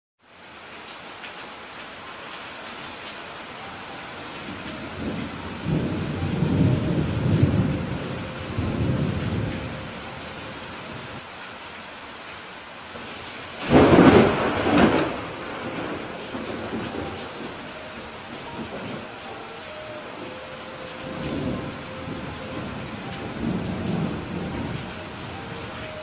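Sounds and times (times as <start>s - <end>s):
steady rain: 0.2s - 26.0s
rolling thunder: 4.5s - 10.0s, 13.6s - 19.2s, 21.0s - 26.0s
sharp thunderclap: 13.6s - 17.5s.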